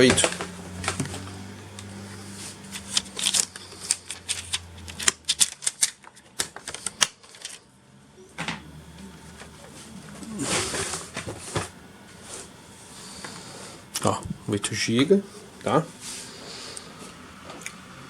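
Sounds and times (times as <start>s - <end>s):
scraping rustling sound: 0.0s - 4.7s, 9.7s - 13.7s.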